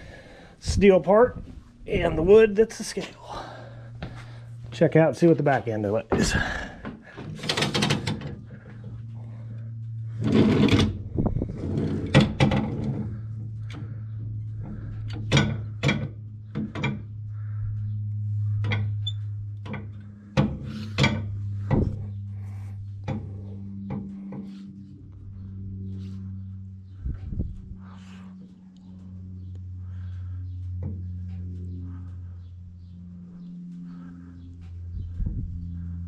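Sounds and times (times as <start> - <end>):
sharp knocks and clunks: 19.7 - 22.1.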